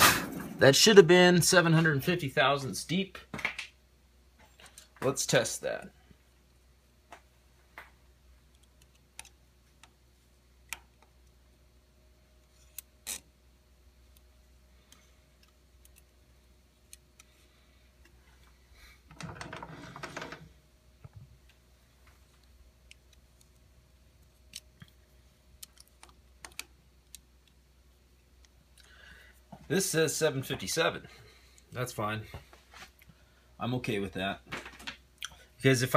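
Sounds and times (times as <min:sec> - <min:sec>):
rattling scrape: 0:00.0 - 0:00.8
faint steady hum: 0:00.0 - 0:35.9.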